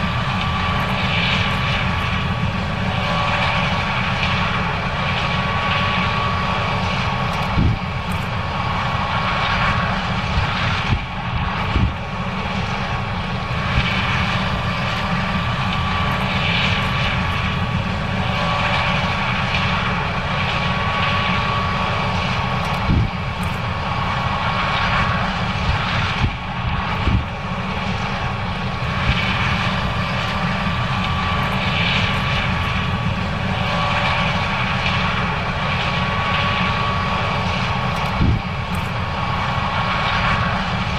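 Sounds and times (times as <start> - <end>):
combine harvester drone: 0.0 - 40.9.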